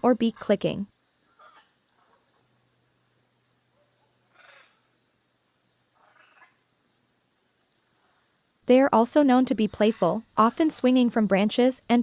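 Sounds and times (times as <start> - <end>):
short rough animal calls: 6.0 - 6.6.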